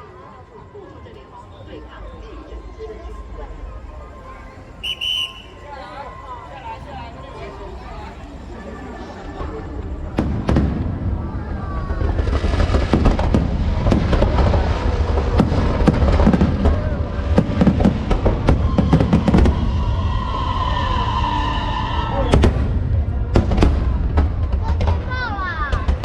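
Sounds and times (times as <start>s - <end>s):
fireworks bursting: 4.4s - 6.5s, 7.4s - 21.6s
deep rumble: 7.5s - 24.7s.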